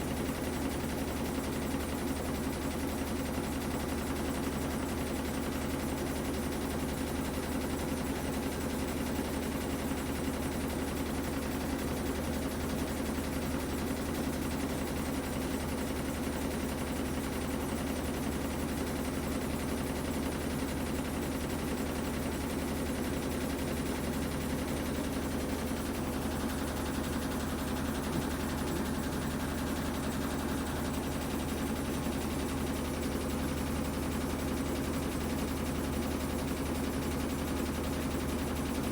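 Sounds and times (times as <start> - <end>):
washing machine spinning: 20.2 - 38.9.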